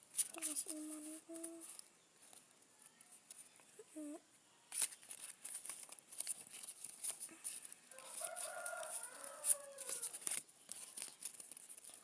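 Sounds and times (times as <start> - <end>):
handling clicks and rustles: 4.7 - 12.0
rooster crowing: 7.9 - 10.2.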